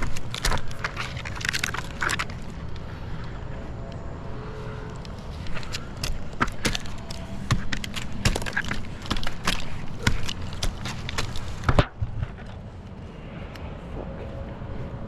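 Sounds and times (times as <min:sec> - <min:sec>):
low hum: 0:00.0 - 0:15.0
sharp knocks and clicks: 0:05.5 - 0:12.6.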